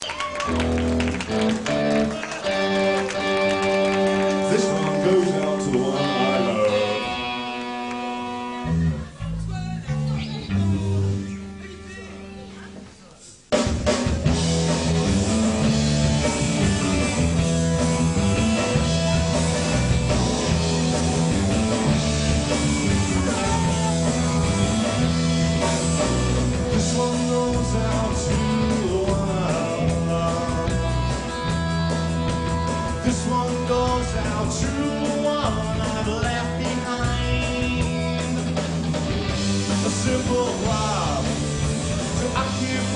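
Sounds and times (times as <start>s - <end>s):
live rock band playing: 0.0s - 42.9s
person singing: 4.2s - 9.3s, 22.5s - 38.4s, 39.6s - 42.9s.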